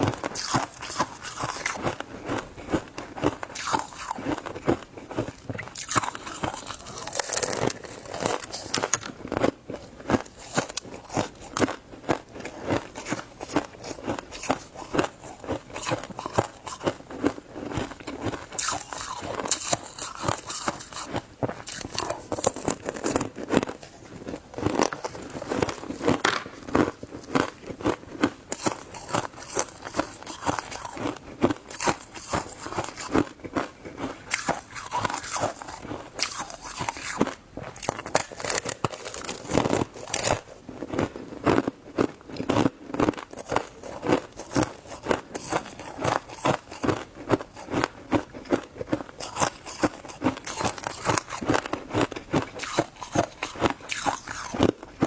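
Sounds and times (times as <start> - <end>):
chewing crunchy shaved ice: 0.0 - 55.0.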